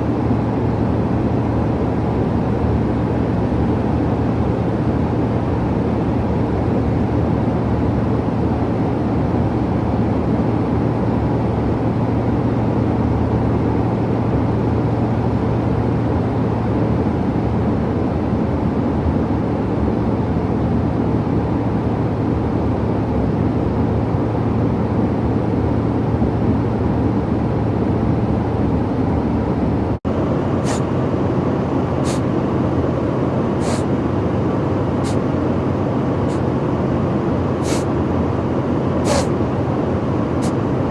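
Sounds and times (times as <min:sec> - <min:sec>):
airliner cabin drone: 0:27.4 - 0:40.9
man sniffling: 0:30.6 - 0:31.0, 0:32.0 - 0:32.3, 0:33.6 - 0:33.9, 0:36.3 - 0:36.5, 0:37.6 - 0:38.0, 0:39.0 - 0:39.4.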